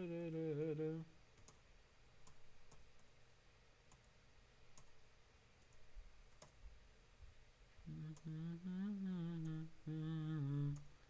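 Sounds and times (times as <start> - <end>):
computer mouse clicks: 1.4 - 1.6, 2.2 - 3.1, 5.6 - 6.6.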